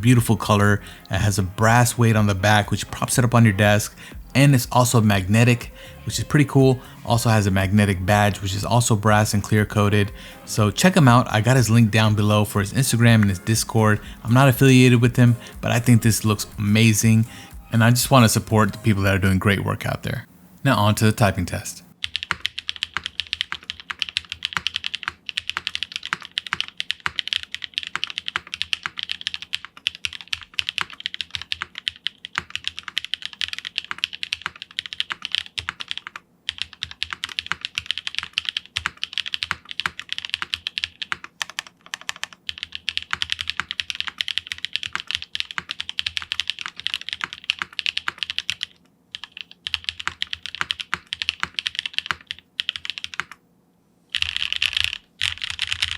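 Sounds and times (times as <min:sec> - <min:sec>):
fast typing on mechanical keyboard: 0:22.0 - 0:53.4, 0:54.1 - 0:55.9.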